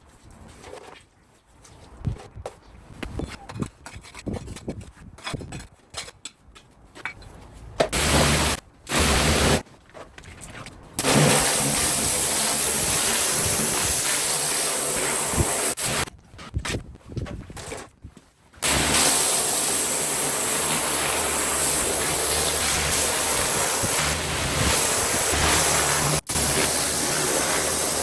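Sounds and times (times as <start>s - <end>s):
pressure washer spraying: 8.0s - 9.6s, 11.0s - 16.1s, 18.6s - 28.0s.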